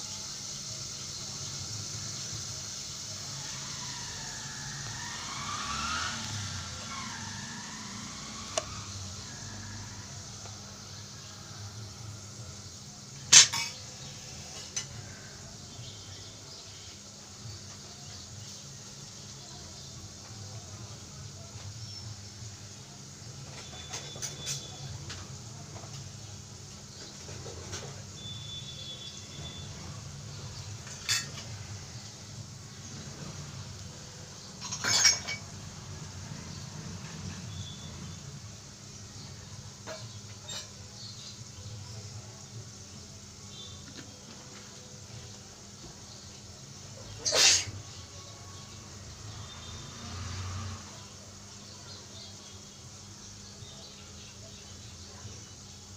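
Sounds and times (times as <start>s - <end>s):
metal kitchenware clinking: 13.3s - 13.9s, 30.8s - 31.5s, 34.6s - 35.6s.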